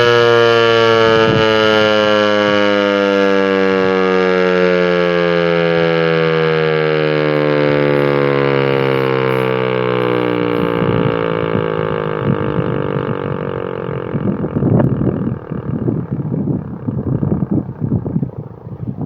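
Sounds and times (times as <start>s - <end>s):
outdoor warning siren: 0.0s - 19.0s
low irregular rumbles: 5.7s - 19.0s.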